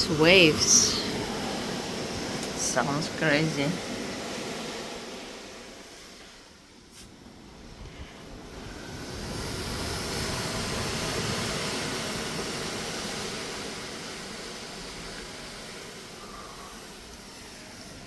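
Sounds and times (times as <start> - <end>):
ocean waves rushing along ship: 0.0 - 18.0.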